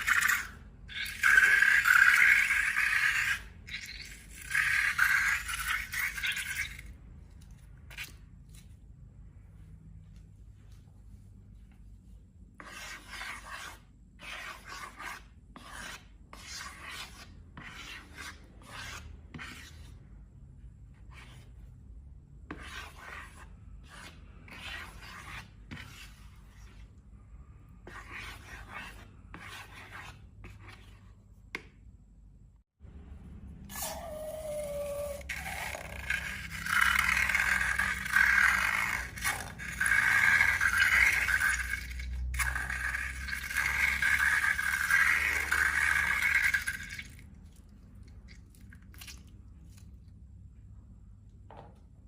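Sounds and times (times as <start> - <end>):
balloon squeak: 33.7 - 37.2
scraping and rubbing balloons: 33.7 - 47.2.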